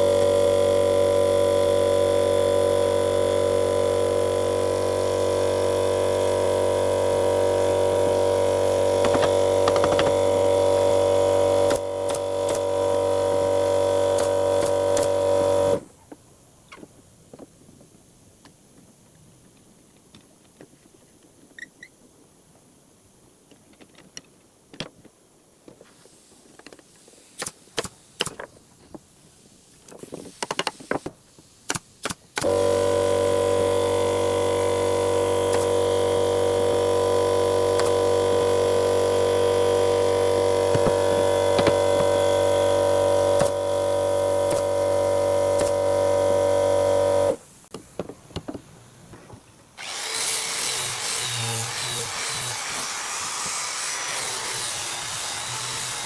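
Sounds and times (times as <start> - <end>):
electric power tool motor: 0.0 - 15.8, 32.4 - 47.4, 49.8 - 56.0
tool scraping wood: 7.7 - 10.9, 40.4 - 43.6
knocks and taps on wood: 9.0 - 10.2, 41.6 - 42.1.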